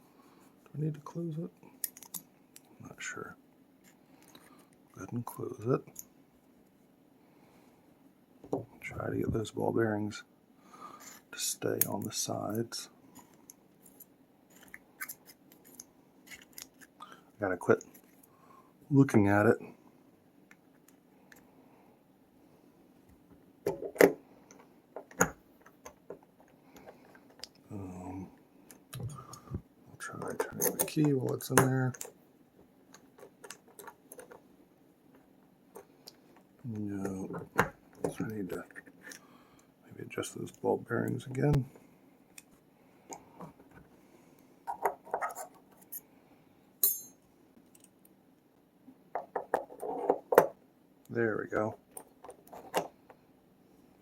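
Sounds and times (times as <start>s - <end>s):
small metal clicks of padlock parts: 1.8s - 2.7s
ringing metal ping: 46.8s - 47.2s.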